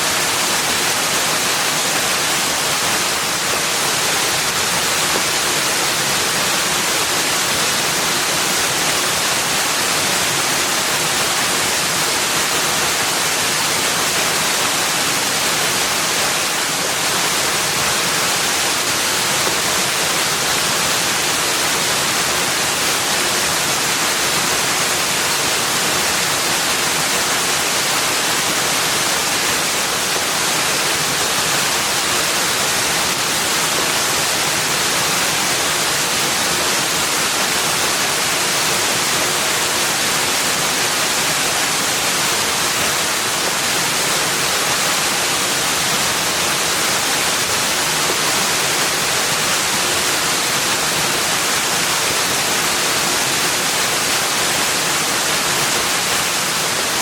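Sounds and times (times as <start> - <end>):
rushing water: 0.0 - 57.0.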